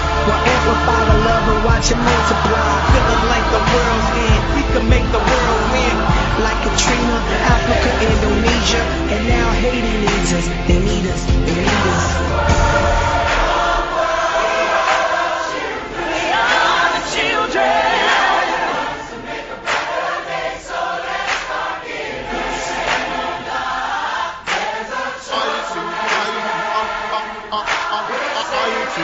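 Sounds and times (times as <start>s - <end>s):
choir singing: 0.0s - 9.9s, 11.0s - 29.0s
backing music: 0.0s - 15.3s, 24.5s - 29.0s.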